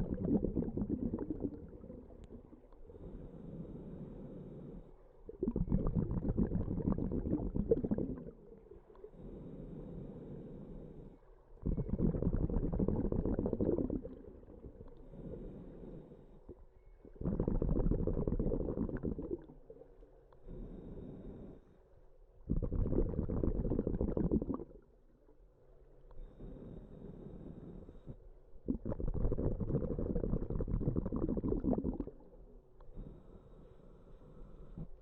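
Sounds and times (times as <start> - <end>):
bubbling regulator exhalations: 0.0 - 2.9, 5.3 - 8.9, 11.6 - 15.5, 16.4 - 20.0, 22.4 - 25.0, 28.6 - 32.5.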